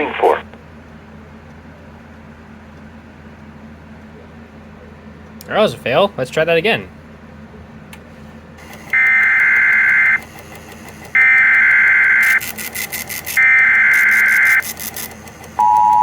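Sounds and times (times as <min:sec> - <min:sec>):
electronic data burst warble: 0:08.9 - 0:10.2, 0:11.2 - 0:14.8.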